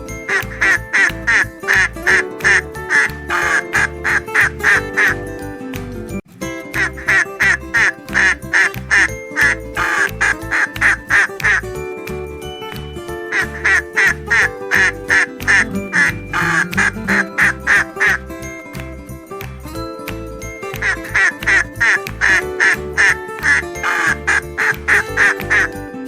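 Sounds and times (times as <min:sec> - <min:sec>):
background music with steady beat: 0:00.0 - 0:26.0
duck quacking: 0:00.3 - 0:05.2, 0:06.9 - 0:11.6, 0:13.4 - 0:18.2, 0:21.2 - 0:25.7.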